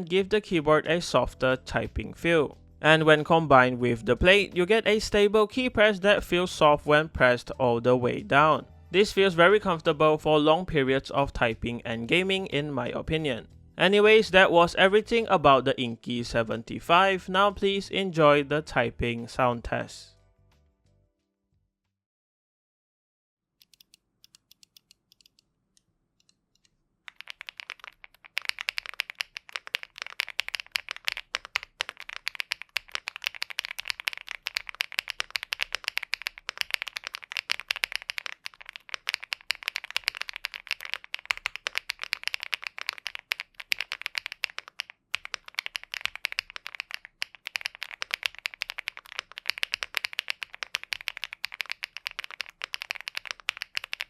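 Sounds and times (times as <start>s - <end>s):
fast typing on mechanical keyboard: 27.1s - 54.0s.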